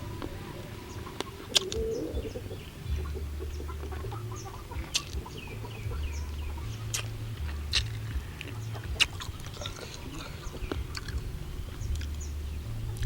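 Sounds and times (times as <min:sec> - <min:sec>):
chickens clucking: 0:00.0 - 0:13.0
sharp clicks: 0:04.8 - 0:05.3, 0:06.9 - 0:09.6.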